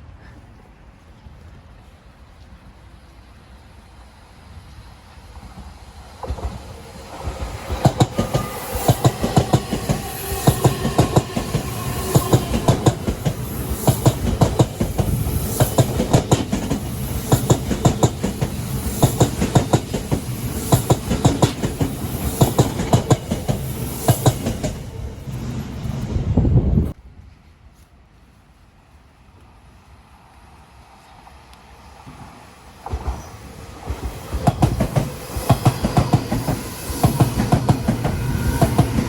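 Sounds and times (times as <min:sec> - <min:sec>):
train rumble: 0:00.0 - 0:39.0
train wheels clacking: 0:05.4 - 0:25.5, 0:32.0 - 0:39.0.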